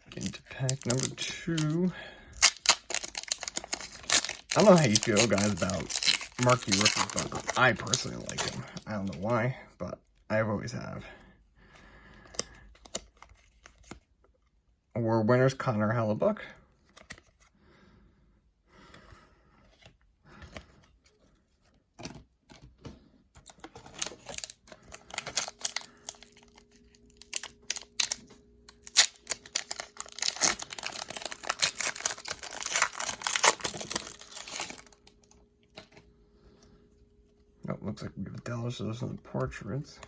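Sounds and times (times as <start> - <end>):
plastic wrapper crinkling and tearing: 0.0 - 9.3, 23.4 - 36.0.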